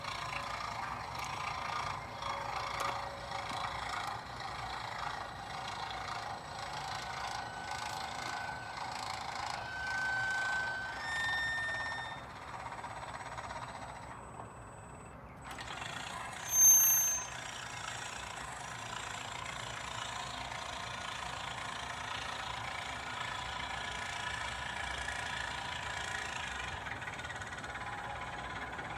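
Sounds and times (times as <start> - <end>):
gate squealing: 7.0 - 12.5, 16.3 - 17.5.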